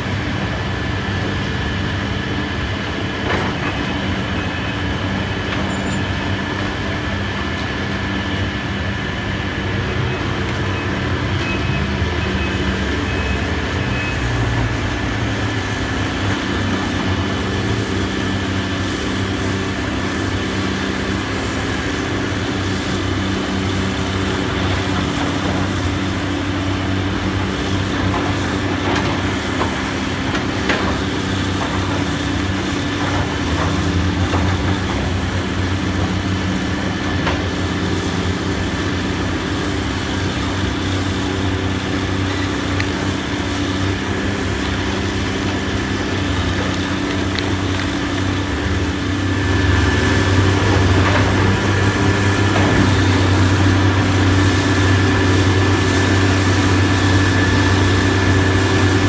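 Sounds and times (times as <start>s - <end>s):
diesel machinery engine drone: 0.0s - 59.0s
machinery clatter: 13.5s - 59.0s.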